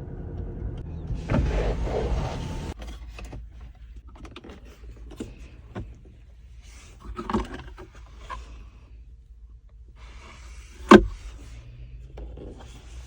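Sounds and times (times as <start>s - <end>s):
car engine running: 0.0s - 8.8s.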